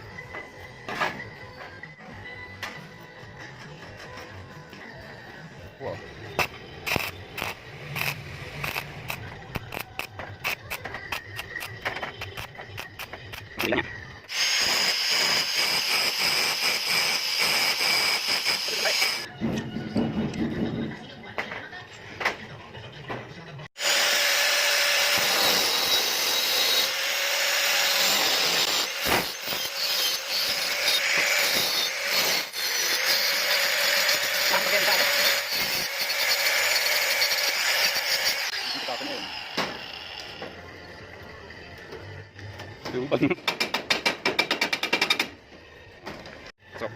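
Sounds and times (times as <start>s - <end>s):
metalworking power tool hissing: 14.3s - 19.3s, 23.8s - 41.2s.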